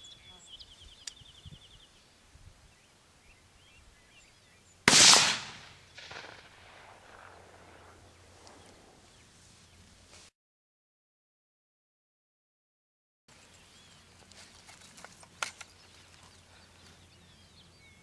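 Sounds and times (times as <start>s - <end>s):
faint birdsong: 0.0s - 4.9s, 5.8s - 10.2s, 13.3s - 18.0s
faint gunshot report: 4.9s - 8.6s
rifle shot: 4.9s - 9.0s.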